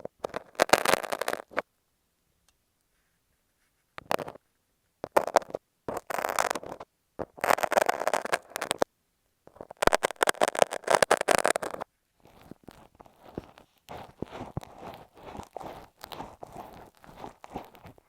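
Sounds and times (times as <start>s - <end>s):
knife and tape scraping microphone: 9.6s - 18.0s.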